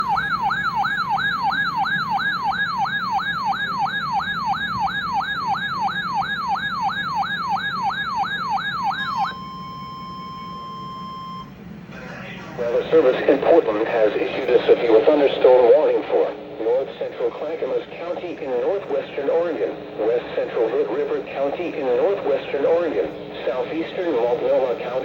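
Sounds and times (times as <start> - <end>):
electronic alarm siren wailing: 0.0 - 11.6
steady single alarm tone: 0.0 - 11.6.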